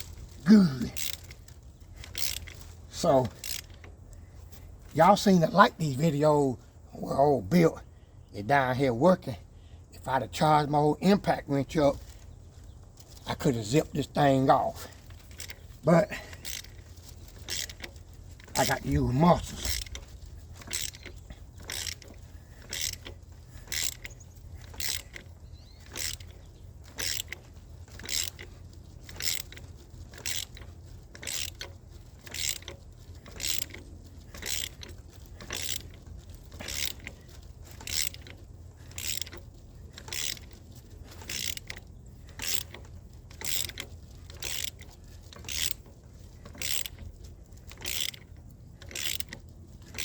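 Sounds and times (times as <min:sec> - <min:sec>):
ratchet wrench clicking: 0:00.9 - 0:03.9, 0:14.9 - 0:50.0
steady low hum: 0:11.9 - 0:50.0.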